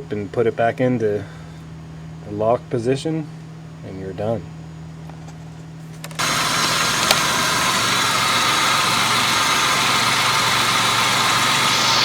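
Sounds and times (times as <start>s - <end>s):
click: 6.0s - 7.3s
car engine idling: 6.0s - 12.0s.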